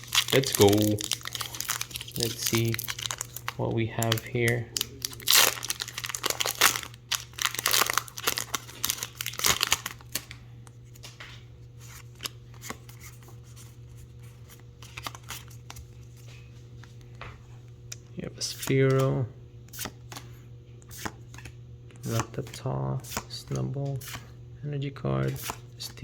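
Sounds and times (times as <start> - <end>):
foil wrapper tearing and crinkling: 0.0 - 10.3, 14.8 - 15.8
steady low hum: 0.0 - 26.0.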